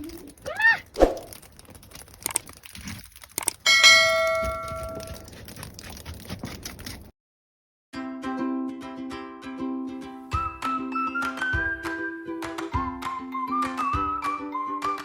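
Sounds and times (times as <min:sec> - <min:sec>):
bell-like ding: 0:03.7 - 0:04.8.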